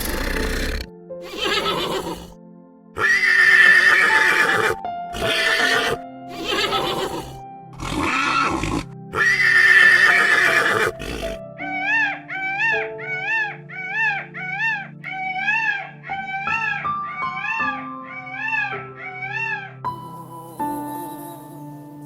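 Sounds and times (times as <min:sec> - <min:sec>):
horse neighing: 0:00.0 - 0:02.3, 0:03.0 - 0:11.4
background music: 0:00.0 - 0:22.0.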